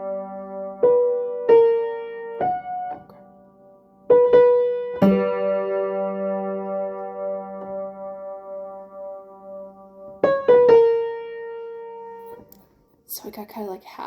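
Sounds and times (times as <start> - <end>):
piano notes played slowly: 0.0 - 12.6.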